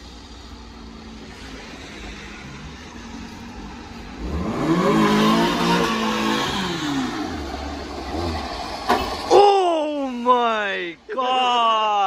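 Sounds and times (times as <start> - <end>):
car engine revving: 0.2 - 9.3.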